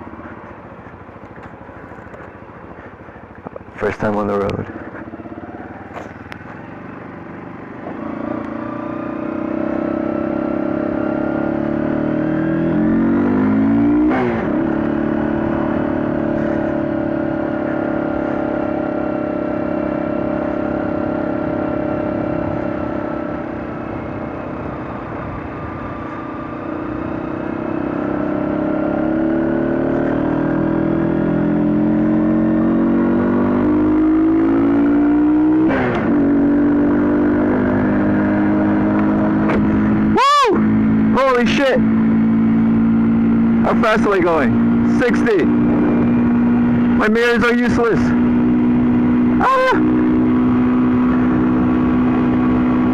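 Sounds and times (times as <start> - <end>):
motorcycle engine pulling through gears: 0.1 - 40.1.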